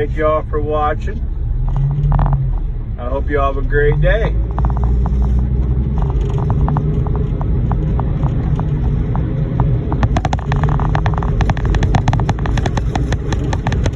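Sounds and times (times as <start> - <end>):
diesel engine droning: 0.0 - 13.9
sharp clicks: 4.4 - 13.9.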